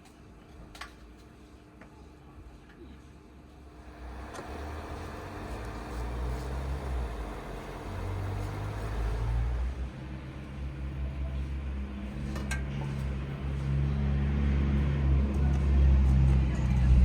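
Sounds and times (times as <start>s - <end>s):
engine hum: 3.5s - 17.0s.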